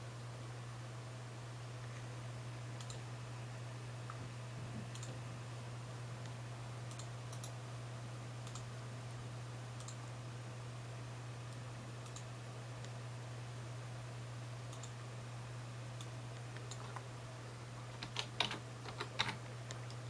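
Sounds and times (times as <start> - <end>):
steady low hum: 0.0 - 20.0
computer mouse clicking: 2.8 - 3.0, 4.9 - 5.2, 6.2 - 7.6, 8.4 - 8.7, 9.8 - 10.0, 12.0 - 12.3, 14.7 - 14.9, 16.0 - 17.0.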